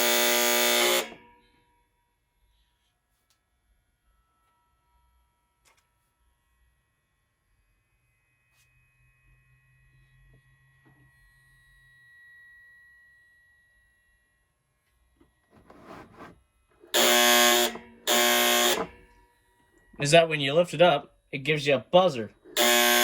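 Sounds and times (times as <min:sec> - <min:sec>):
heater safety buzzer: 0:00.0 - 0:01.3, 0:16.9 - 0:19.1, 0:22.5 - 0:23.0.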